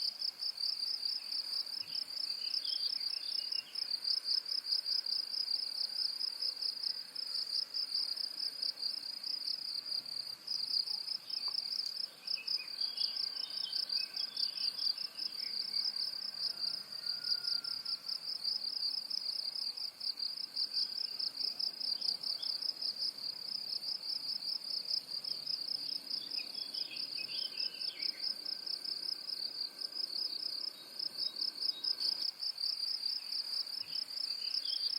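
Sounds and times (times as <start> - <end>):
high insect trill: 0.0 - 34.9
faint bird chirps: 10.8 - 18.1, 26.2 - 28.5, 33.1 - 34.9.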